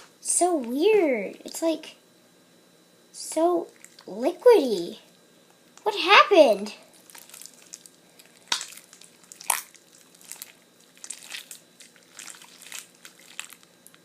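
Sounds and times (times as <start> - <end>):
slime squelching in hands: 3.7 - 4.2, 6.9 - 14.0
slime popping: 7.0 - 14.0.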